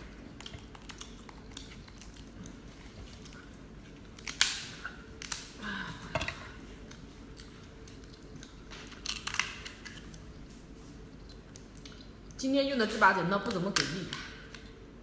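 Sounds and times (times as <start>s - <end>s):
scissors cracking crab shell: 4.1s - 5.6s, 7.7s - 10.2s.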